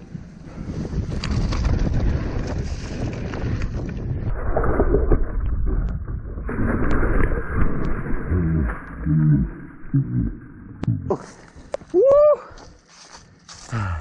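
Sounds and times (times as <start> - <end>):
wind rushing over microphone: 0.0 - 8.3
bike tyres rumbling: 0.0 - 14.0
bike rattling over rough ground: 0.2 - 8.3.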